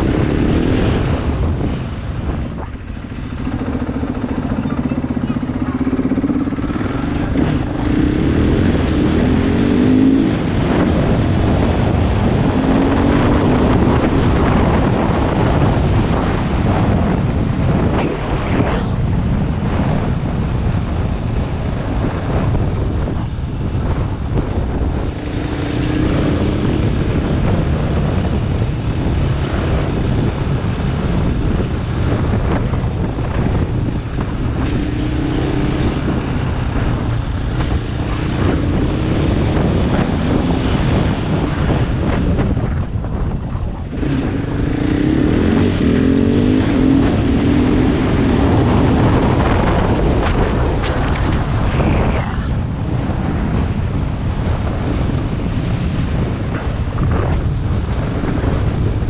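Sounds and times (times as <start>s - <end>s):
motorcycle engine revving: 0.0s - 59.0s
wind buffeting microphone: 0.0s - 59.0s.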